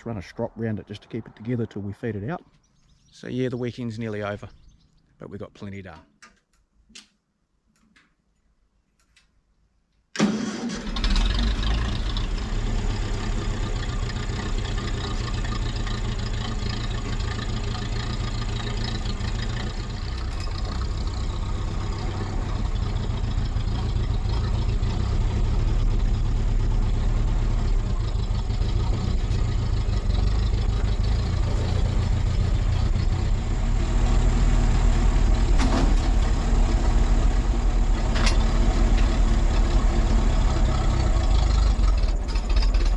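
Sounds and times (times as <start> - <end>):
tractor engine running: 10.2 - 42.9.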